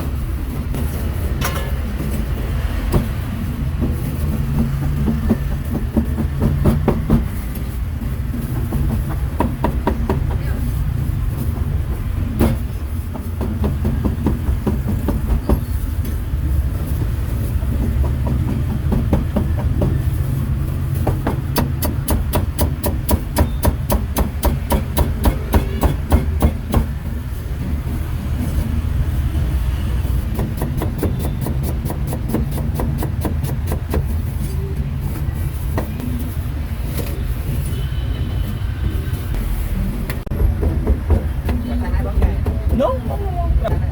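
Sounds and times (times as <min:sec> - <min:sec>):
street noise rumble: 0:00.0 - 0:43.9
cleaver chopping meat: 0:21.1 - 0:26.9.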